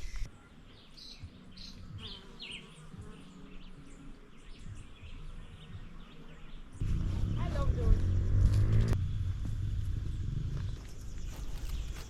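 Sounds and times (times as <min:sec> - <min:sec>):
insect buzzing: 0:01.4 - 0:07.4.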